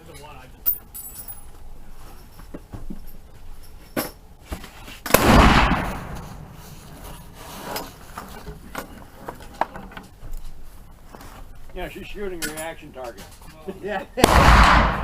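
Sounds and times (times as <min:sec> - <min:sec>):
rifle shot echoing: 0:05.1 - 0:06.5, 0:14.2 - 0:15.0.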